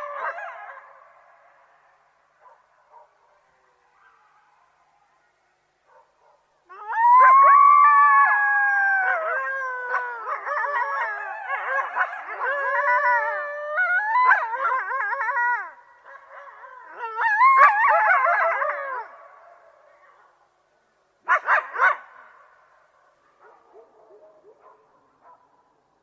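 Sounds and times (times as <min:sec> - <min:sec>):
coyotes howling and yipping: 0:00.0 - 0:20.4.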